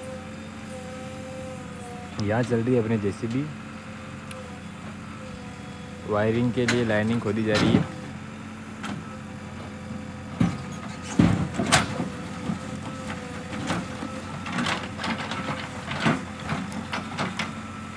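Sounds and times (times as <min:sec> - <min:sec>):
diesel engine running: 0:00.0 - 0:17.9
knocks and clanks: 0:10.4 - 0:17.6.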